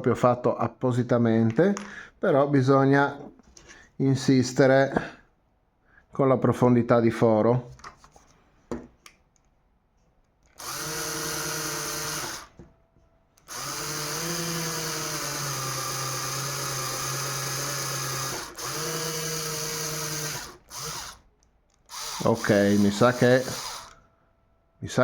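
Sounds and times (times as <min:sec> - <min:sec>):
electric drill whining: 0:10.5 - 0:12.6, 0:13.4 - 0:24.0.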